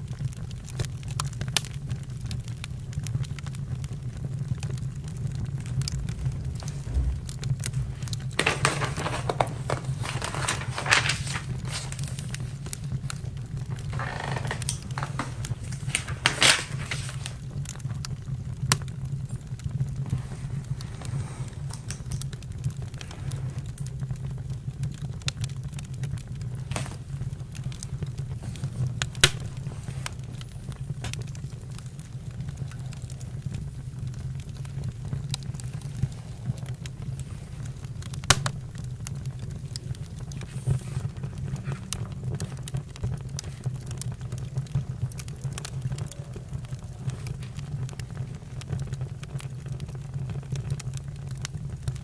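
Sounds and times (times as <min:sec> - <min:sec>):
campfire crackling: 0:00.0 - 0:52.0.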